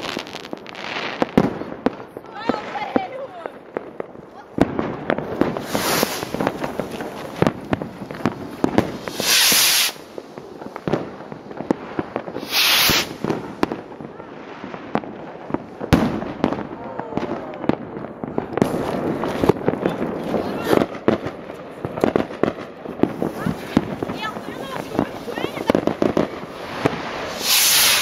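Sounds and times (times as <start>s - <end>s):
fireworks popping and crackling: 0.0s - 28.0s
firework bang: 4.6s - 28.0s
firework hiss: 5.2s - 16.6s, 23.0s - 28.0s.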